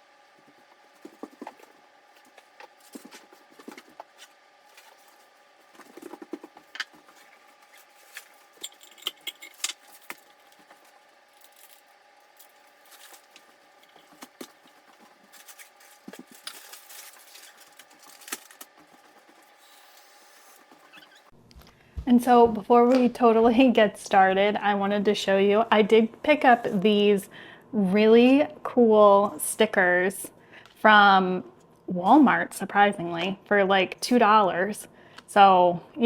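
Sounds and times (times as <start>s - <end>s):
faint steady hum: 0.0s - 36.0s
packaging rustling: 2.2s - 21.3s.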